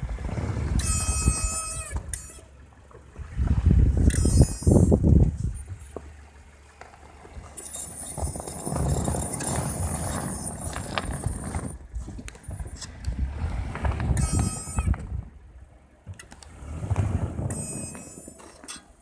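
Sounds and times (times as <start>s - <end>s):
vehicle rumble: 0.0s - 19.0s
brake pads squealing: 0.6s - 2.6s, 4.0s - 5.6s, 7.5s - 13.0s, 13.8s - 15.2s, 16.1s - 19.0s.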